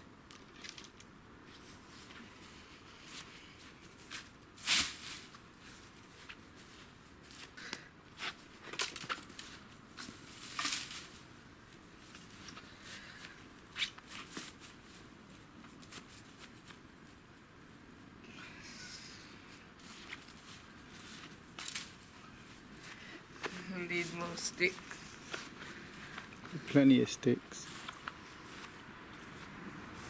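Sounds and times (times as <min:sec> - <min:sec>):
twigs crackling and snapping: 0:00.2 - 0:01.1, 0:08.6 - 0:11.1, 0:21.1 - 0:22.0
sticks rustling: 0:00.3 - 0:17.2, 0:19.4 - 0:26.8, 0:27.4 - 0:30.0.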